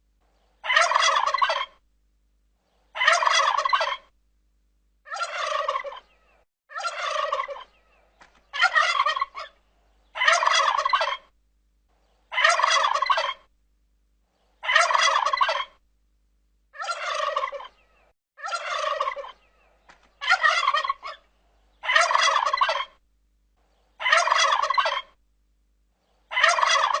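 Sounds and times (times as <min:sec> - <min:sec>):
turkey gobbling: 0:00.6 - 0:01.8, 0:03.0 - 0:04.1, 0:05.1 - 0:11.3, 0:12.3 - 0:13.5, 0:14.6 - 0:15.8, 0:16.8 - 0:23.0, 0:24.0 - 0:25.2, 0:26.3 - 0:27.0.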